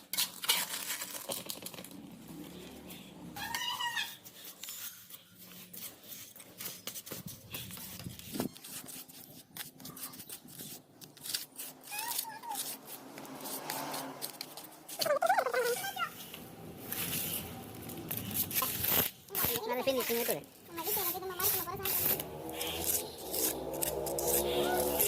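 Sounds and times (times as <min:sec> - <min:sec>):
cement scraping in bucket: 0:00.0 - 0:02.1, 0:09.9 - 0:25.0.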